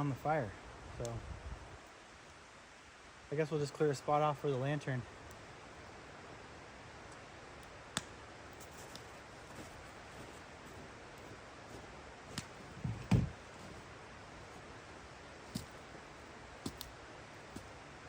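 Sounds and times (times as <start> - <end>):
steady low hiss: 0.0 - 18.0
dull thump: 12.8 - 13.4.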